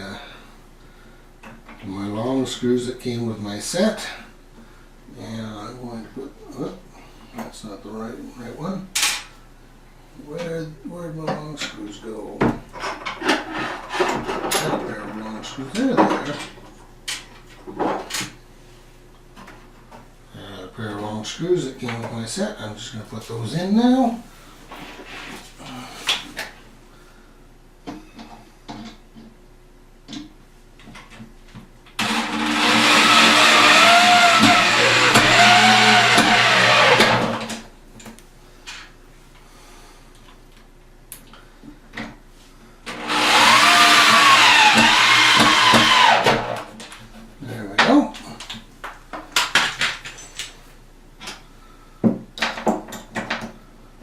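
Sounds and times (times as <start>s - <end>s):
electric drill motor whine: 32.0s - 37.6s, 42.9s - 46.6s.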